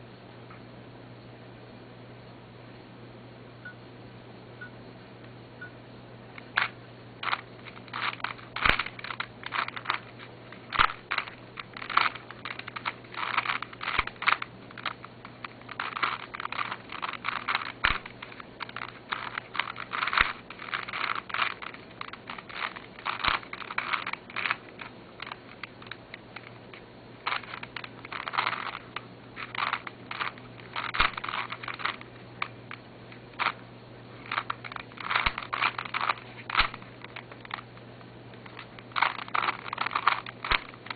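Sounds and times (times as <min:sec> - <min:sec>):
plastic puzzle cube clicking: 0:06.4 - 0:32.8, 0:33.4 - 0:33.6, 0:34.2 - 0:37.8, 0:38.4 - 0:40.9.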